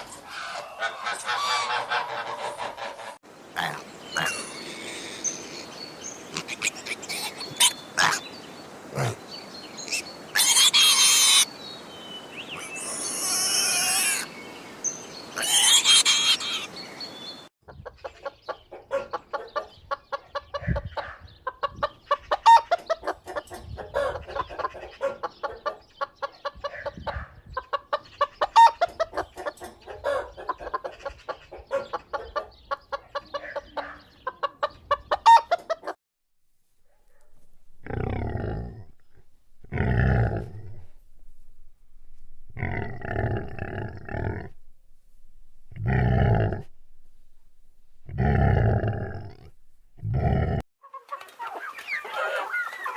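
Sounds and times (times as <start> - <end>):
hens clucking: 0.0 - 5.4, 17.7 - 36.0, 50.8 - 52.9
chicken calling loudly: 0.3 - 3.2, 10.3 - 11.5, 15.4 - 16.8, 33.3 - 36.0, 50.8 - 52.9.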